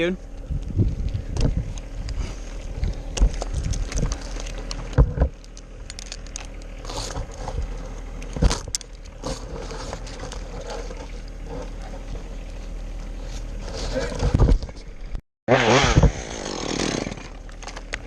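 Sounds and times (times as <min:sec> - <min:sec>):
climbing gear clinking and knocking: 0:03.2 - 0:07.6.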